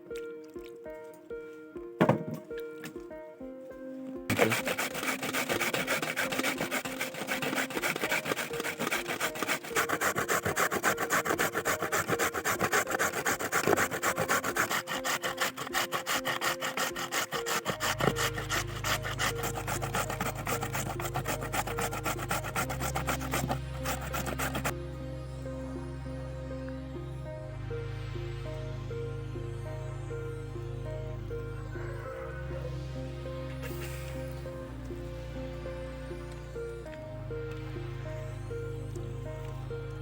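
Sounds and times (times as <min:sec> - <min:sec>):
carrots grated on metal grater: 0:04.3 - 0:24.7.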